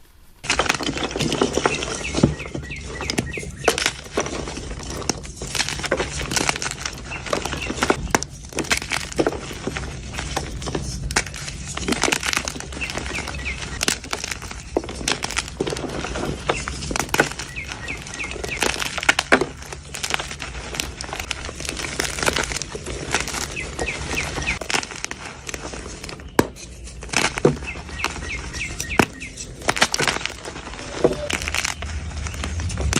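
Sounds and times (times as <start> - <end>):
chalk crunching and crumbling: 0.0 - 32.9.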